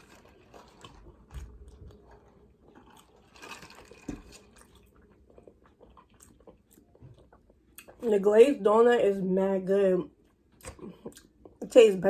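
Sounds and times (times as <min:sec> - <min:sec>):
person chewing food: 0:00.0 - 0:08.0, 0:10.2 - 0:11.6.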